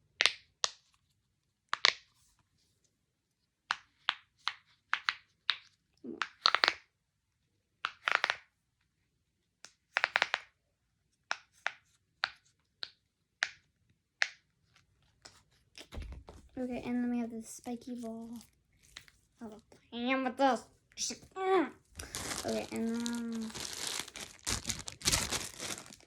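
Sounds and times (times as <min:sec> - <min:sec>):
fidget toy popping: 0:04.9 - 0:06.8, 0:09.9 - 0:10.5.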